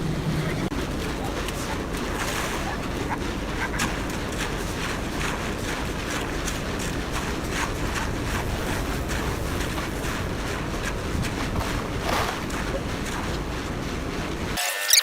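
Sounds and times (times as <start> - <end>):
construction machinery running: 0.0 - 15.0
short scrapes and knocks: 1.4 - 13.5.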